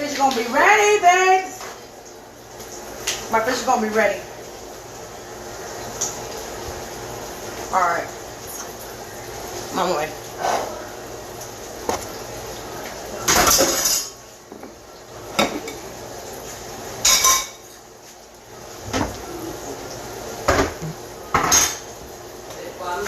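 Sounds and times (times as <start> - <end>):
utensils clattering against pans: 13.2 - 15.9, 17.0 - 17.6, 20.5 - 21.9.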